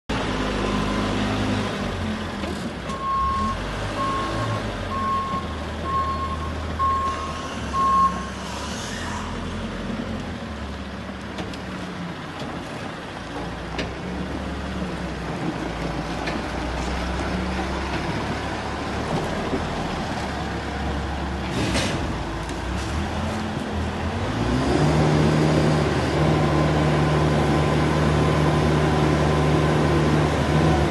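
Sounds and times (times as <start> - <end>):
reversing alarm beeps: 3.0 - 8.3.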